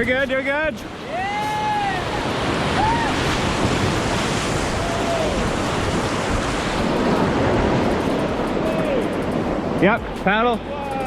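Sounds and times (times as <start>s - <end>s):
whitewater rapids roaring: 0.0s - 11.0s
wind on microphone: 0.9s - 10.2s.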